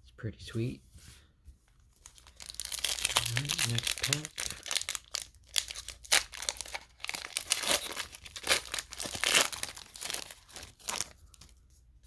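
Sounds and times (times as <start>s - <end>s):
foil wrapper tearing and crinkling: 2.0s - 11.5s.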